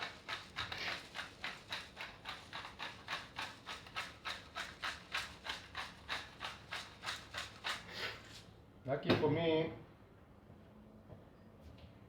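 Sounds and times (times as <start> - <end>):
pepper grinder rasping: 0.0 - 8.4.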